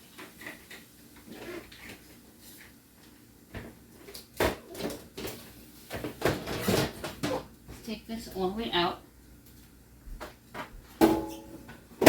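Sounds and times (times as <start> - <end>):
refrigerator drawer rattling: 5.9 - 7.5.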